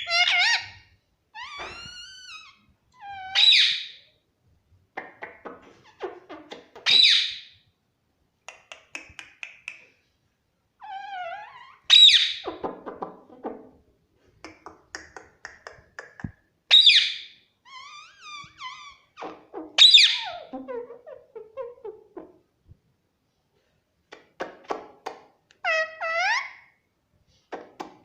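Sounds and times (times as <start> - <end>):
parrot shrill call: 0.0 - 0.8, 1.4 - 4.0, 25.6 - 26.7.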